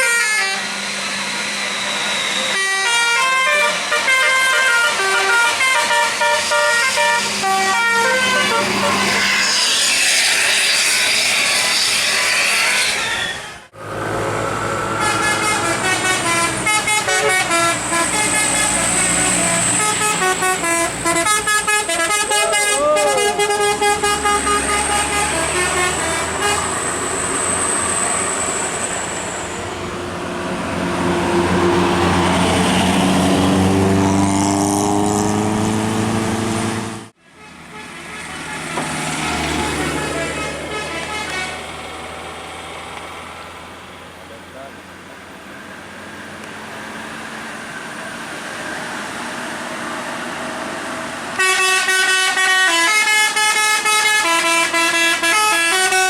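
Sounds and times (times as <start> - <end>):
multi-tone musical horn melody: 0.0 - 0.8, 2.5 - 9.6, 14.9 - 26.8, 39.6 - 41.7, 51.4 - 56.0
bus engine revving: 0.0 - 56.0.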